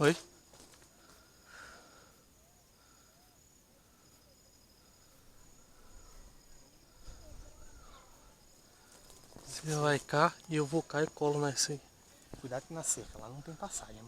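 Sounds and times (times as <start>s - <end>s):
faint insect trill: 0.0s - 14.0s.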